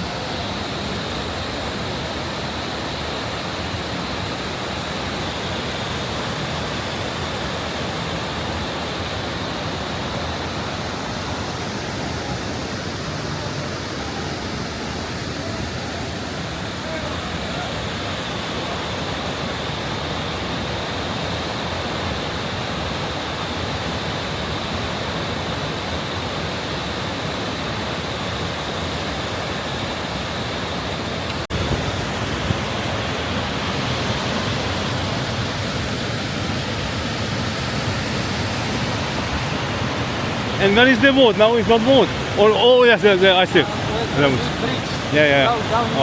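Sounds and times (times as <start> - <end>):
waterfall rushing: 0.0 - 46.0.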